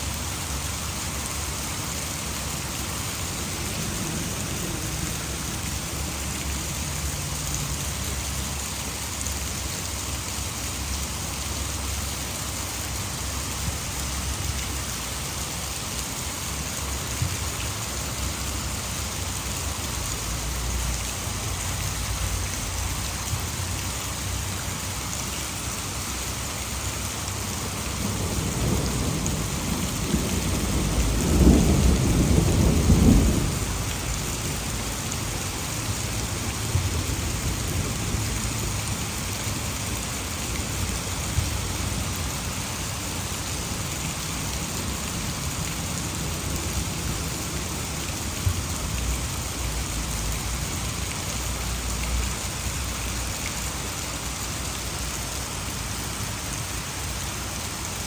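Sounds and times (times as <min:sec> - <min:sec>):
heavy rain falling: 0:00.0 - 0:58.0
thunder rolling: 0:28.0 - 0:34.2.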